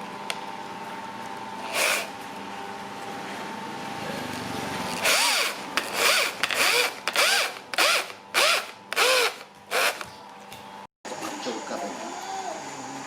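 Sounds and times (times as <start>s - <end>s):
power drill motor spinning: 1.6s - 2.2s, 4.9s - 10.2s.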